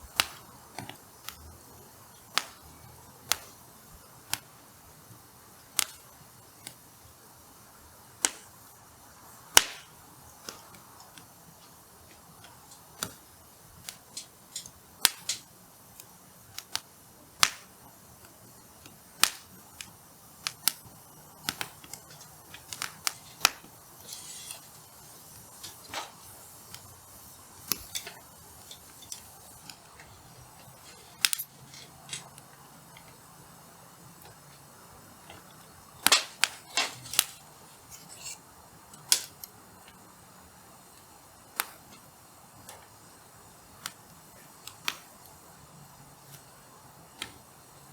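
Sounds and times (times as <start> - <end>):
campfire crackling and popping: 0.0 - 47.9
fire hissing: 0.0 - 47.9.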